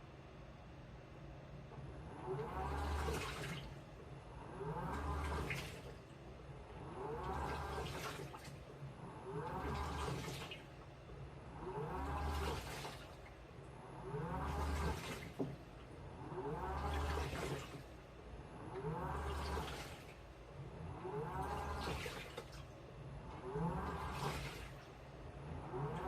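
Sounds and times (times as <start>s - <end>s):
washing machine motor whine: 0.0s - 26.0s
water and laundry sloshing: 1.6s - 26.0s.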